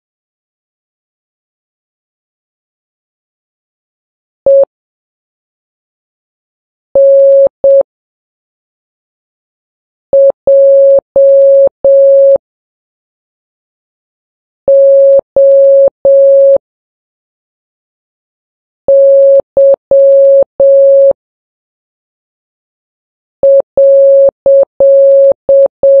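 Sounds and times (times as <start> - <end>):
morse code beeps: 4.5 - 4.7, 7.0 - 7.8, 10.2 - 12.4, 14.7 - 16.6, 18.9 - 21.2, 23.4 - 26.0.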